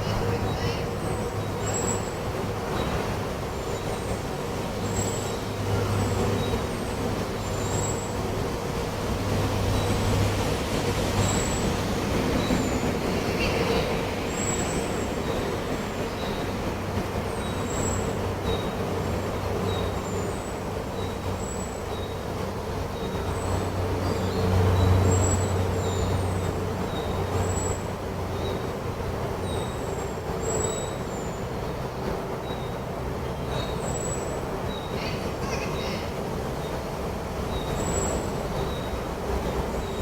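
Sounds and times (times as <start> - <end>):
forest birds chirping: 29.4 - 36.8.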